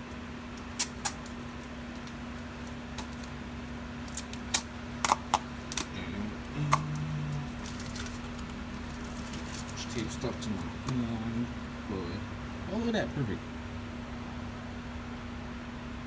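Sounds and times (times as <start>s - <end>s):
steady low hum: 0.0s - 16.0s
plastic packaging clicks and snaps: 0.6s - 3.4s, 4.0s - 5.9s.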